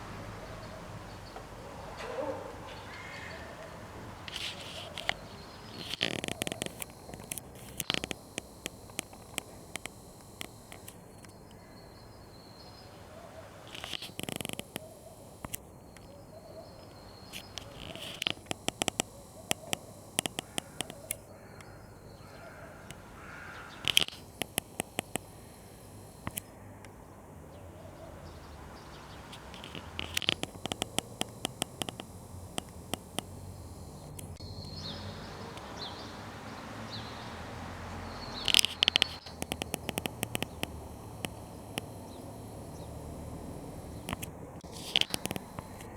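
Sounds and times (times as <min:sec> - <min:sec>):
crows cawing: 0:00.5 - 0:05.3, 0:20.4 - 0:24.1
sharp clicks: 0:03.0 - 0:27.0, 0:29.3 - 0:37.2, 0:37.9 - 0:45.9.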